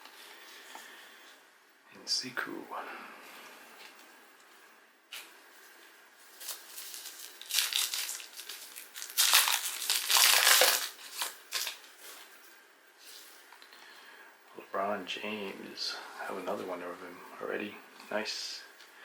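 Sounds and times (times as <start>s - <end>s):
wrapper tearing and crinkling: 6.4s - 11.9s.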